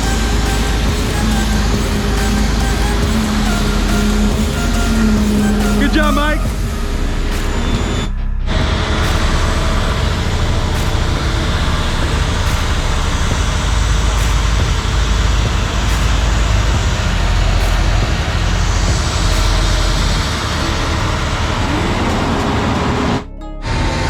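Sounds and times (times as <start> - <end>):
heavy machinery engine drone: 0.0 - 24.0.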